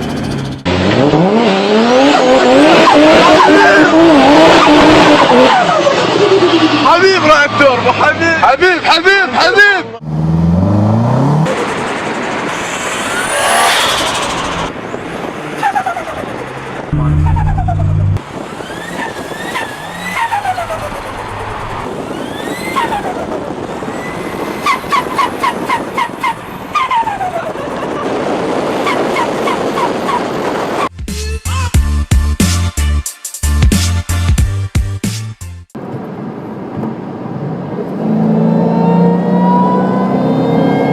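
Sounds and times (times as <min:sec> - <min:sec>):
car engine revving: 0:00.0 - 0:08.2, 0:10.0 - 0:30.6
turbo whine: 0:16.9 - 0:23.0.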